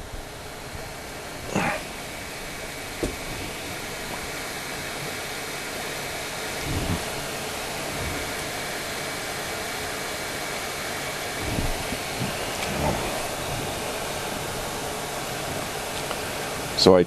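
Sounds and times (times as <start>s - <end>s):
hot air blowing: 0.0s - 17.0s
handling thumps: 1.3s - 8.7s.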